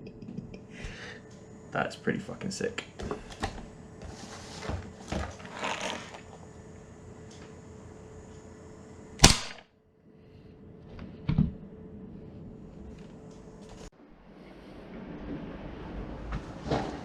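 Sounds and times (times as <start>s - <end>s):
handling rustle: 4.0s - 6.4s
airsoft pistol shot: 9.2s - 9.6s.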